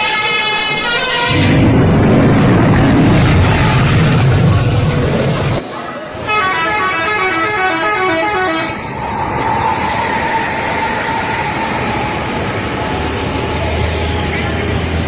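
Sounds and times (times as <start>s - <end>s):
multi-tone bus horn melody: 0.0s - 1.5s, 6.2s - 8.8s.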